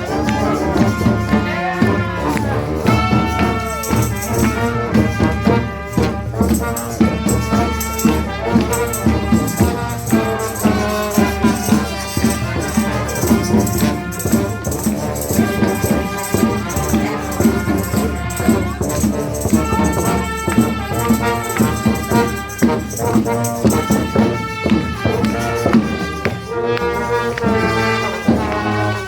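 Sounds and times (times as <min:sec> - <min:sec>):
brass horns playing: 0:00.0 - 0:29.0
drums beating: 0:00.0 - 0:29.0
shaker rattling: 0:06.3 - 0:26.5.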